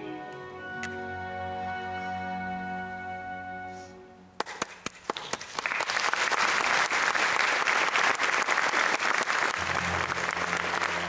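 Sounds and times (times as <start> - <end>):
audience applauding: 4.4 - 11.0.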